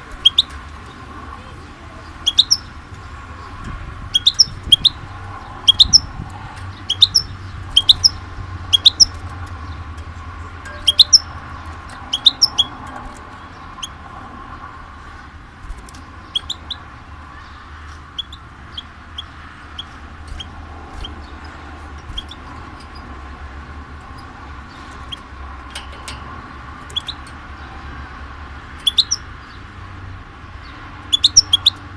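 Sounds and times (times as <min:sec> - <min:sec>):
songbird chirping: 0:00.0 - 0:14.0, 0:15.0 - 0:23.2.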